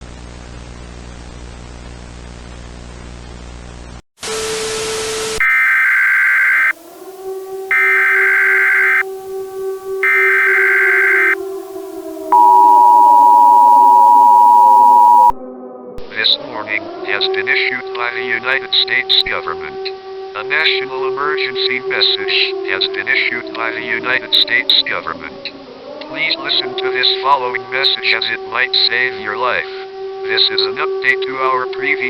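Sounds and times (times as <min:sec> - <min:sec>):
screeching digital header tones: 0:05.4 - 0:06.8, 0:07.7 - 0:09.0, 0:10.0 - 0:11.4, 0:12.3 - 0:15.4
static buzz: 0:05.4 - 0:06.8, 0:07.7 - 0:09.0, 0:10.0 - 0:15.4
two-tone attention signal: 0:05.4 - 0:06.8, 0:07.7 - 0:09.0, 0:10.0 - 0:11.4, 0:12.3 - 0:15.4.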